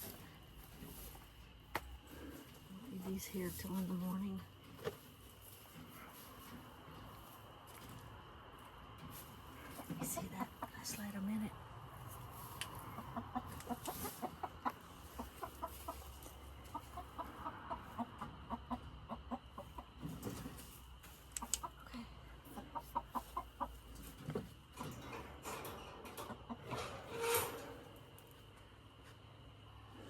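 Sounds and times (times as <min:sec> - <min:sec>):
hens clucking: 0:00.0 - 0:28.1
knocks and rustles: 0:20.0 - 0:21.2.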